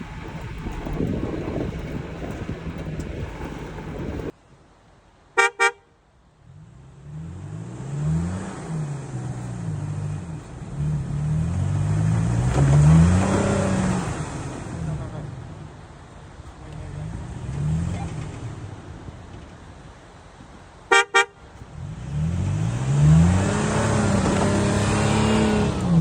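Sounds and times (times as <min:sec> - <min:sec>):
rushing noise: 0:00.0 - 0:04.3
vehicle engine revving: 0:00.0 - 0:04.3, 0:06.4 - 0:19.7, 0:20.9 - 0:26.0
horn toots: 0:05.4 - 0:05.9, 0:20.9 - 0:21.6.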